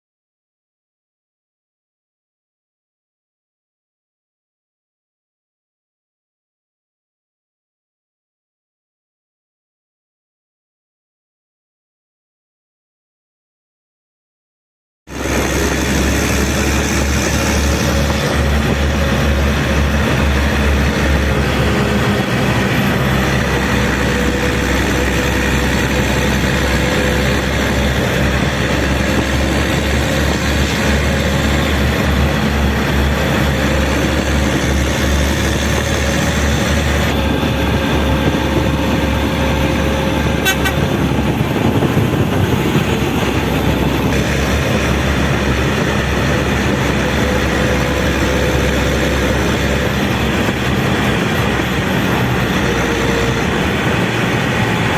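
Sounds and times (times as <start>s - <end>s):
heavy vehicle engine: 15.1s - 54.9s
road noise: 15.1s - 54.9s.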